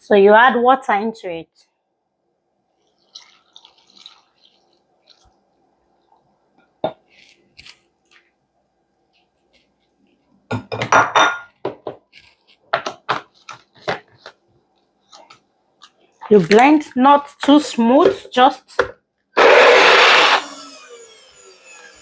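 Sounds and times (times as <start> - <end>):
kitchen utensils knocking and rattling: 10.5 - 12.1.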